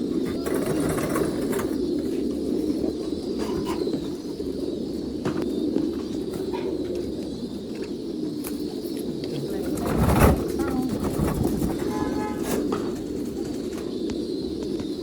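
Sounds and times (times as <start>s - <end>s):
pigeons cooing: 0.0s - 15.0s.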